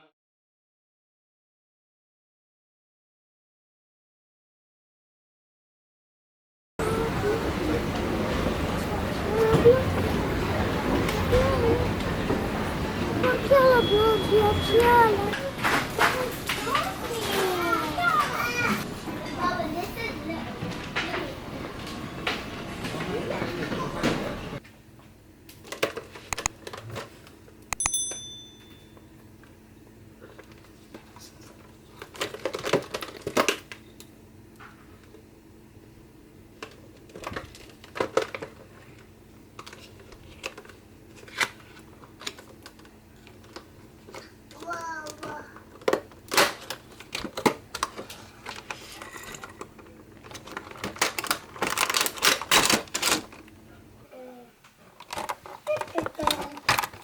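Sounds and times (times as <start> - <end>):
clicks and knocks on hard surfaces: 25.7 - 27.1
bell-like metallic strike: 27.8 - 29.0.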